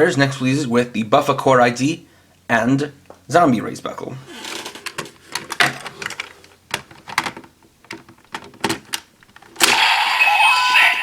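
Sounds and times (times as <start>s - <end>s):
toy electronic sound effects: 9.6s - 11.0s.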